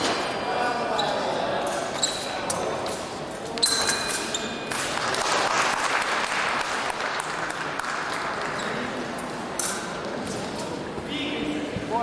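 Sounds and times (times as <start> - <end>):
spectators applauding: 4.8 - 8.6.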